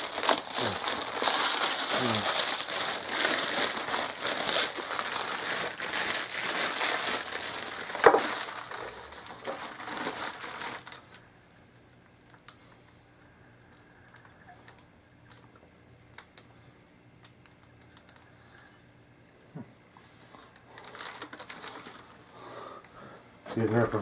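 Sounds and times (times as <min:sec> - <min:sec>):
packaging crinkling and rustling: 0:00.0 - 0:11.3, 0:14.0 - 0:15.5, 0:17.2 - 0:18.4, 0:20.1 - 0:22.4.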